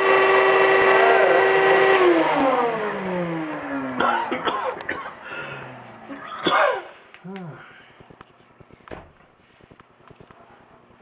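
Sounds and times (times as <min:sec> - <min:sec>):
shop vac motor whining: 0:00.0 - 0:04.4.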